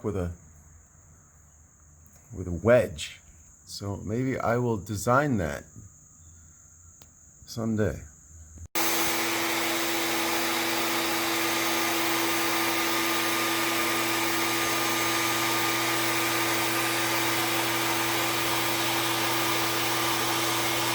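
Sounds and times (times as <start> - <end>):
high-speed electric motor running: 8.8 - 20.9.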